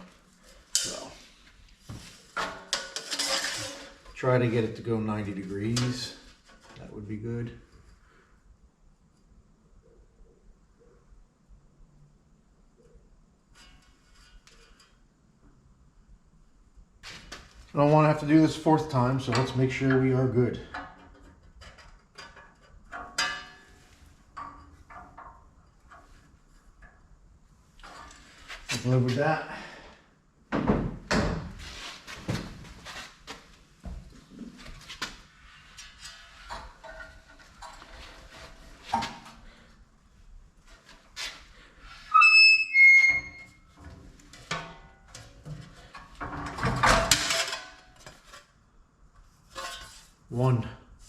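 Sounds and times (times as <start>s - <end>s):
sheet metal clanks and knocks: 2.4s - 4.2s, 20.6s - 26.2s, 43.8s - 48.2s
sheet metal clanking: 2.4s - 4.5s
high squeal: 42.0s - 43.6s.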